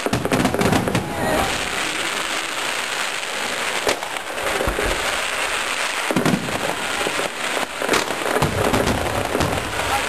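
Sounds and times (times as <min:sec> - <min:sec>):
deep firework boom: 0:00.0 - 0:02.1, 0:06.1 - 0:06.8, 0:07.9 - 0:10.0
fireworks crackling: 0:00.0 - 0:10.0
fireworks sharp bangs: 0:00.0 - 0:10.0.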